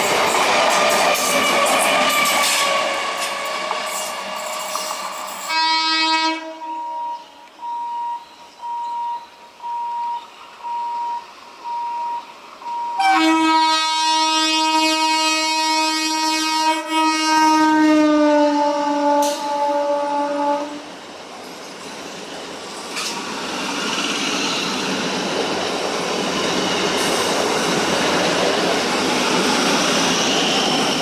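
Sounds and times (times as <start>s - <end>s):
train wheels clattering on rails: 0.0s - 5.6s, 21.4s - 31.0s
train horn blast: 5.5s - 7.2s, 13.0s - 20.8s
electronic beep: 6.8s - 13.0s.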